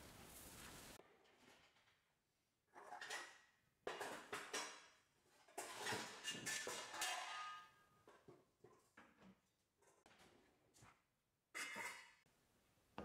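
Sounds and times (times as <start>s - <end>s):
dishes and cutlery clattering: 2.7s - 10.4s, 11.5s - 12.3s.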